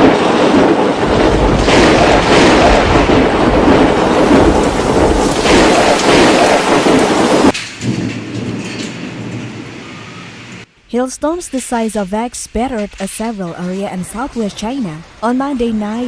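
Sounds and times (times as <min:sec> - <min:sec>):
hailstones pelting roofs: 0:00.0 - 0:09.5.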